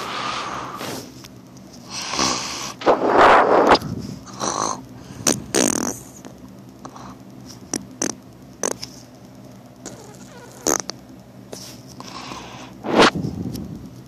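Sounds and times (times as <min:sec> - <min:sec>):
person snoring: 0:01.9 - 0:02.8, 0:03.4 - 0:06.1
quiet breathing: 0:11.5 - 0:12.8.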